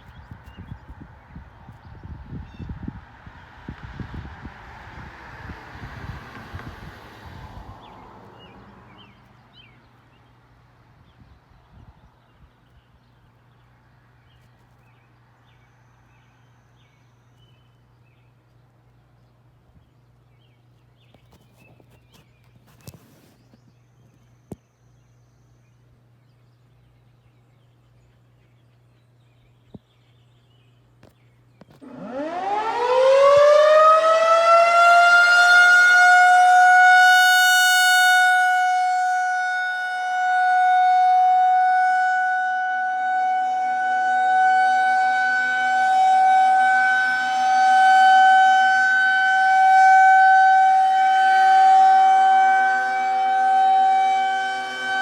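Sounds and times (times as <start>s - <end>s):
warning siren winding up: 31.8s - 55.0s.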